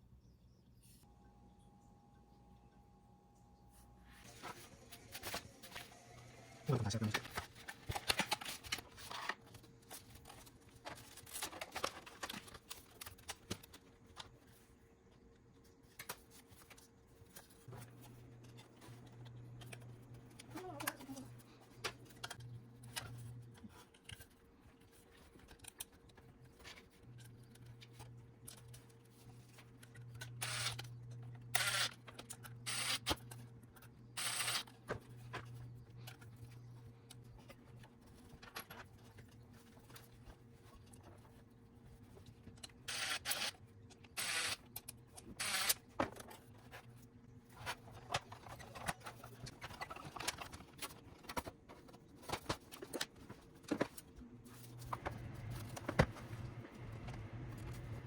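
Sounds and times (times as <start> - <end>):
low steady hum: 0.0 - 43.0.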